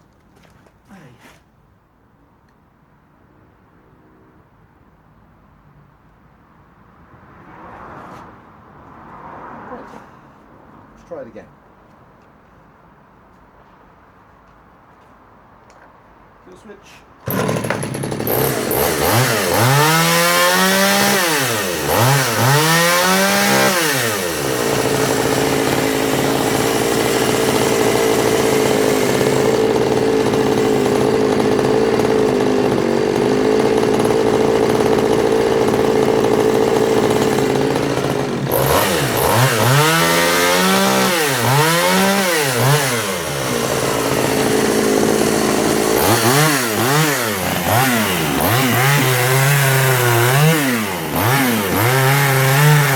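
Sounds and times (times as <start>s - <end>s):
chainsaw cutting wood: 17.2s - 52.9s
chainsaw revving: 17.2s - 52.9s.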